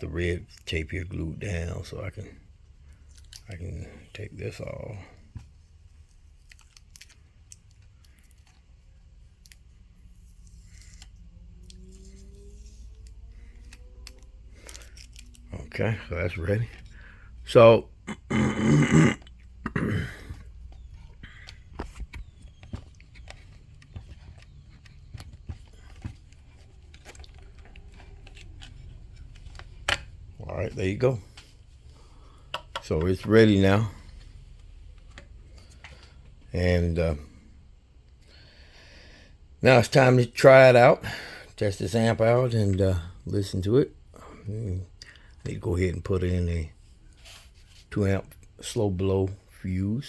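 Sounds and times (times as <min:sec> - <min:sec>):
steady low hum: 0:00.0 - 0:50.0
tape being peeled off: 0:20.6 - 0:30.2.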